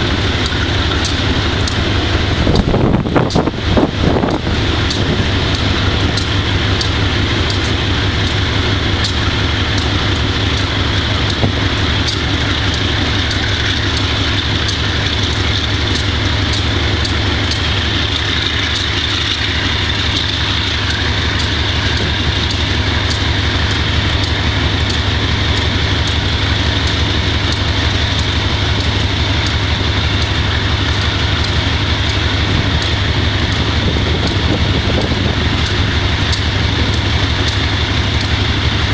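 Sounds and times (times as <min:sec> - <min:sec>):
diesel locomotive engine running: 0:00.0 - 0:38.9
faint ticking: 0:00.0 - 0:38.9.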